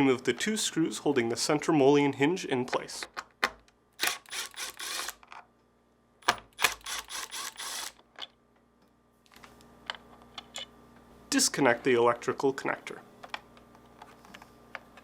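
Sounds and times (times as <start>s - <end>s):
screwdriver bit rapid clicking: 4.0s - 5.2s, 6.2s - 8.0s.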